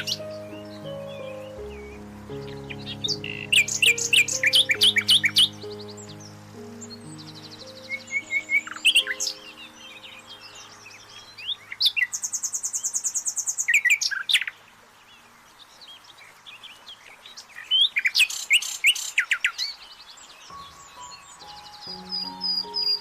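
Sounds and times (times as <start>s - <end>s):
faint steady low tones: 0.0s - 12.7s
high bird trill: 0.0s - 14.6s, 20.5s - 23.0s
songbirds chirping: 0.0s - 23.0s.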